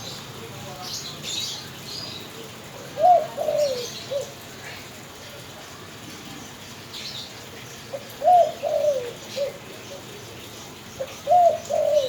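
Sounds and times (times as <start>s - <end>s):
dove cooing: 2.7s - 4.9s, 7.9s - 10.2s, 11.0s - 12.0s.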